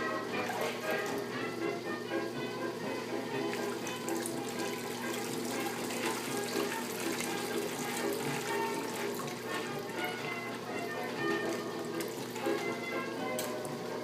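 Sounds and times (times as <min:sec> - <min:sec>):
music playing: 0:00.0 - 0:14.0
water sloshing in washing machine: 0:00.0 - 0:14.0.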